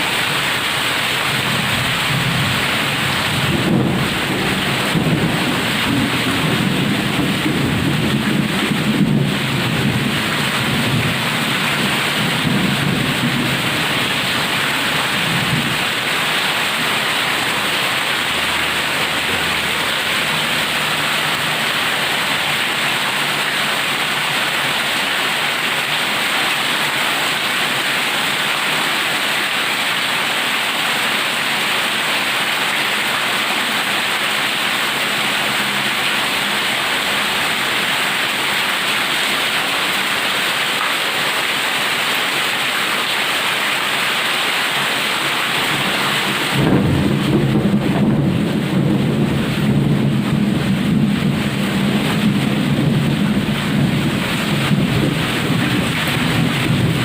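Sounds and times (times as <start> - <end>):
heavy rain hissing: 0.0 - 57.0
thunder rumbling: 1.1 - 23.4, 45.6 - 57.0.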